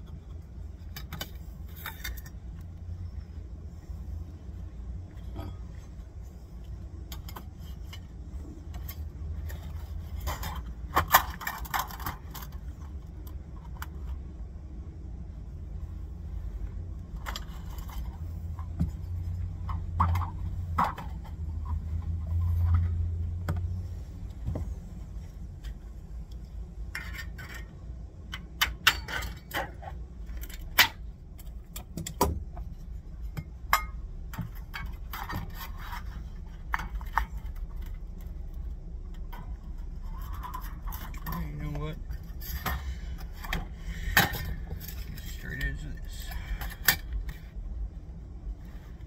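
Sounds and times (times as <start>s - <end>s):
steady low hum: 0.0s - 49.0s
metallic clinks and scrapes: 32.6s - 47.5s.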